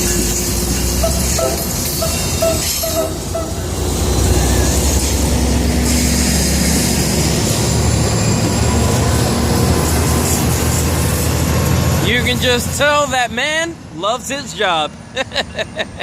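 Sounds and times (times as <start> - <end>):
wheels on rails: 0.0 - 12.1
train engine rumble: 0.0 - 16.0
short train horn toots: 1.0 - 3.8.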